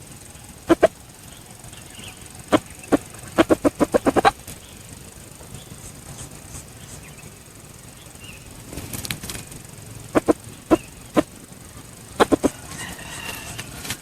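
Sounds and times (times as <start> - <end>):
junglefowl clucking: 0.6 - 4.6, 10.1 - 14.0.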